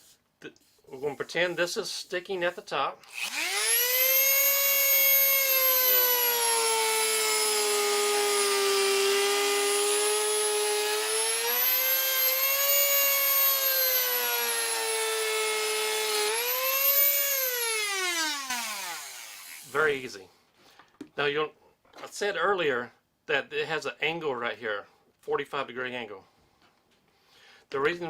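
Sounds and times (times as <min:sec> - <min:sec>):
rotary tool planing wood: 0:03.1 - 0:19.8.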